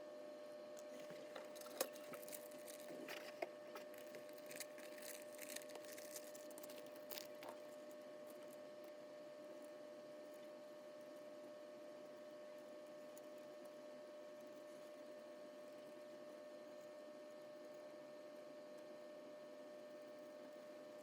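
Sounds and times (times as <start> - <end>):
faint steady hum: 0.0 - 21.0
small clicks and rustles: 0.8 - 8.6.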